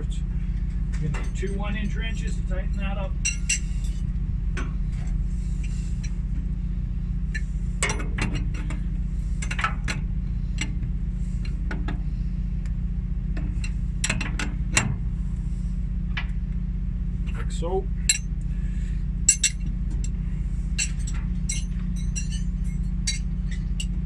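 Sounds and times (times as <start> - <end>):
steady low hum: 0.0 - 24.0
wrenches clinking on metal fitting: 1.0 - 4.0, 19.3 - 20.2, 20.8 - 24.0.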